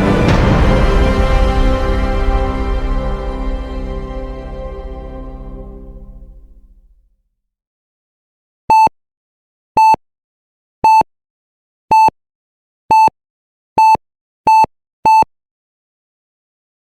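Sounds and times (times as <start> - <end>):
short electronic beeps: 12.9 - 13.1, 13.8 - 15.3.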